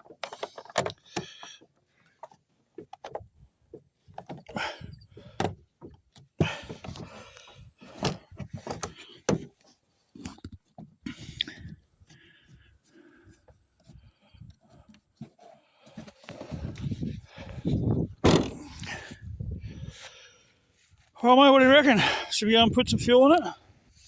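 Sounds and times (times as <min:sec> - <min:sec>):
handling clicks and knocks: 0:00.0 - 0:11.0.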